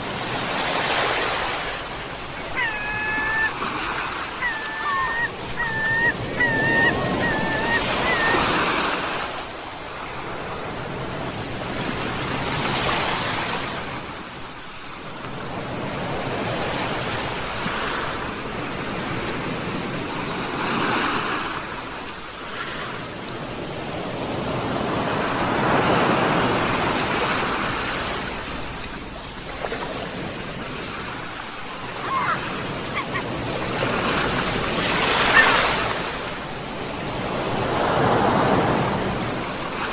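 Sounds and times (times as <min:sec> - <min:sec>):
sea waves breaking on shore: 0:00.0 - 0:39.9
seagulls mewing: 0:02.1 - 0:09.2, 0:31.7 - 0:36.4.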